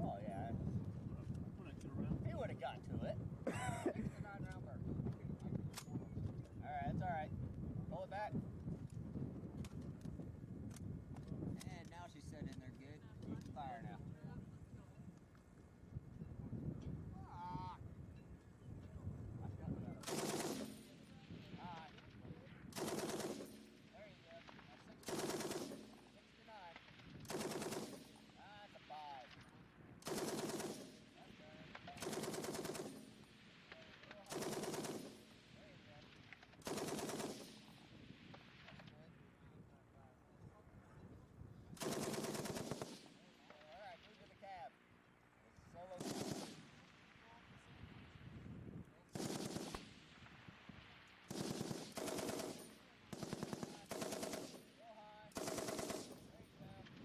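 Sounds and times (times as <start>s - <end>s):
machine gun firing bursts: 20.0s - 28.4s, 30.0s - 37.9s, 41.8s - 43.7s, 45.9s - 46.9s, 49.1s - 50.1s, 51.2s - 57.0s.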